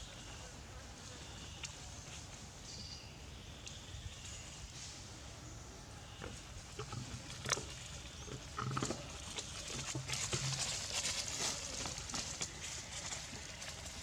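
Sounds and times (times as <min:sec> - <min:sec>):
scuffling and rustling: 0:09.4 - 0:14.0.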